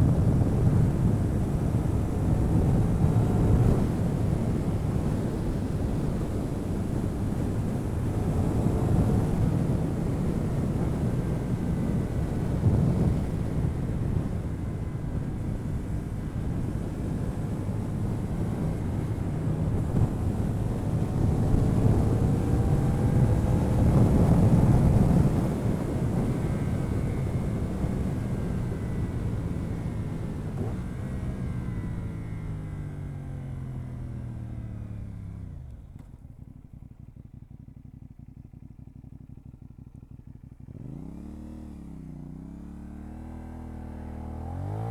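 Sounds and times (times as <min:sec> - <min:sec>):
wind rushing over microphone: 0:00.0 - 0:32.2
motorcycle engine: 0:11.1 - 0:44.9.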